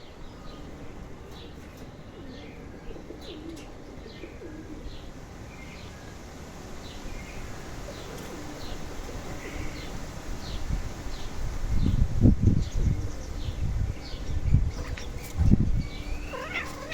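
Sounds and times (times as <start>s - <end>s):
garden birds chirping: 0.0s - 16.9s
low cooing calls: 0.3s - 5.1s, 7.9s - 10.0s, 14.7s - 16.9s.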